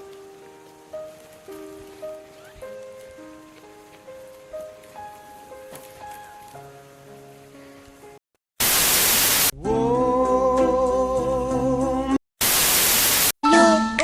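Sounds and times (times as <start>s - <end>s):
soft music: 0.0s - 8.2s, 9.6s - 12.2s, 13.4s - 14.0s
static hiss bursts: 8.6s - 9.5s, 12.4s - 13.4s.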